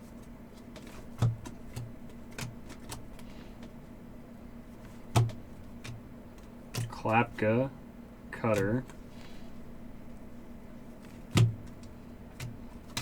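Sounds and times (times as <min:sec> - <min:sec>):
steady low hum: 0:00.0 - 0:13.0
cards clicking and tapping: 0:00.1 - 0:03.8, 0:04.7 - 0:07.0, 0:08.4 - 0:09.1, 0:10.9 - 0:13.0.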